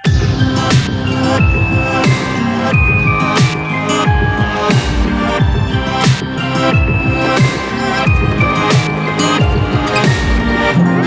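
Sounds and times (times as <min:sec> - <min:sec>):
electronic music with beat: 0:00.0 - 0:11.0
sliding bass notes: 0:00.0 - 0:11.0
sharp snare hit: 0:00.1 - 0:03.8, 0:06.0 - 0:06.6.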